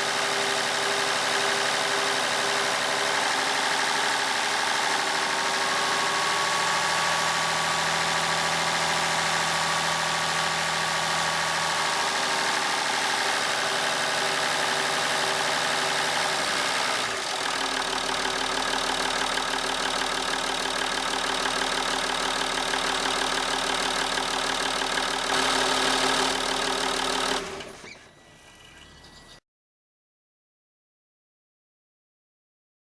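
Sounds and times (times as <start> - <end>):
diesel engine idling: 17.0 - 27.8.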